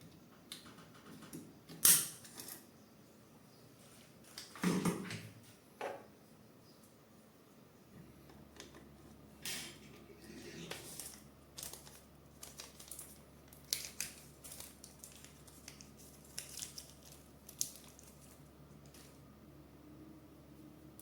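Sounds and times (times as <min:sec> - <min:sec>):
packaging crinkling: 0:10.7 - 0:19.2.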